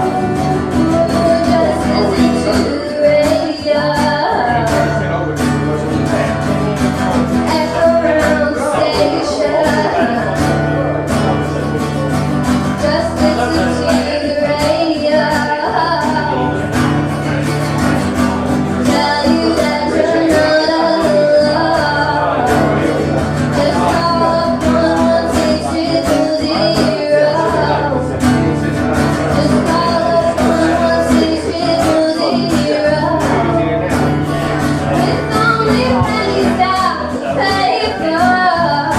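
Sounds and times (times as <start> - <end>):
person singing: 0.0 - 38.9
strummed guitar: 0.0 - 38.9
low bass notes: 33.3 - 36.8.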